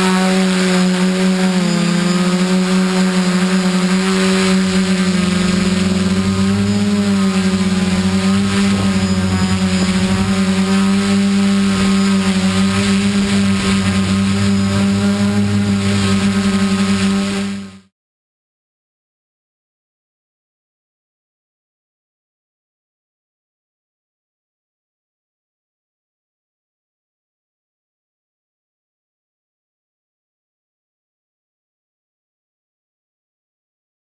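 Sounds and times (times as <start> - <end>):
drone propellers humming: 0.0 - 17.9.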